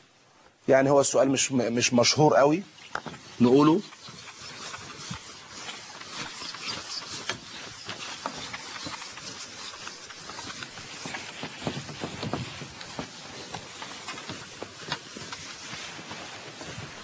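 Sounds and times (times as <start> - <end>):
steady hiss: 0.0 - 17.0
handwriting scratching: 3.0 - 15.9.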